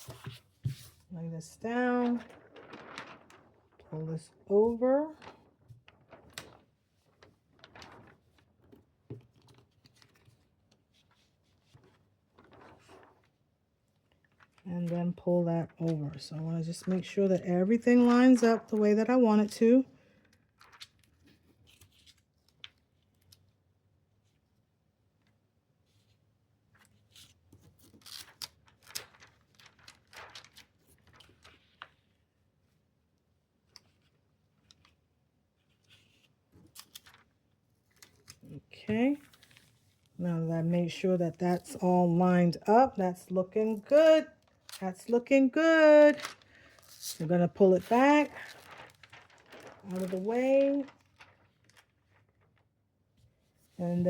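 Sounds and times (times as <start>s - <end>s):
plastic sheets rustling: 0.0s - 19.8s, 26.7s - 32.3s, 35.6s - 54.0s.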